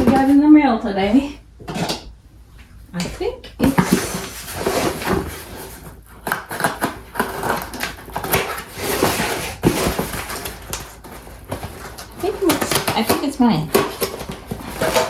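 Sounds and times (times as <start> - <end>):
packaging rustling and crinkling: 3.6 - 15.0.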